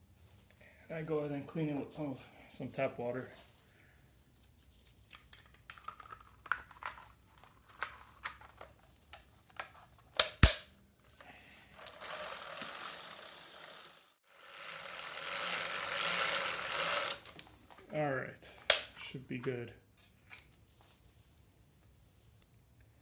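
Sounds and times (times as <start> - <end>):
ratchet clicking: 11.8 - 17.5.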